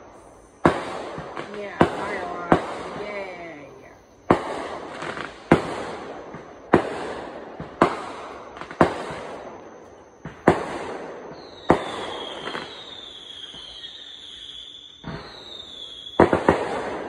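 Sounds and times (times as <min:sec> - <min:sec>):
descending firework whistle: 0:00.0 - 0:17.0
firework bangs: 0:00.0 - 0:17.0
faint firework pops: 0:04.3 - 0:14.0, 0:14.9 - 0:17.0.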